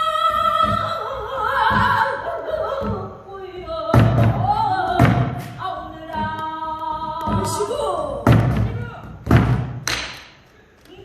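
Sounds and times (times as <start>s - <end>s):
woman singing: 0.0s - 9.5s
barrel drum thumps: 3.9s - 6.4s, 7.3s - 9.8s.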